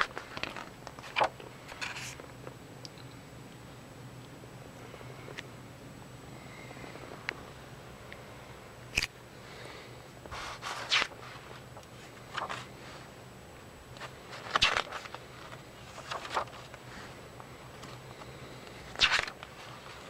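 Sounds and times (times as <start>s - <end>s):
paper pages rustling: 0.0s - 2.2s, 10.3s - 12.8s, 14.0s - 17.2s, 18.9s - 20.0s
low steady hum: 0.0s - 20.0s.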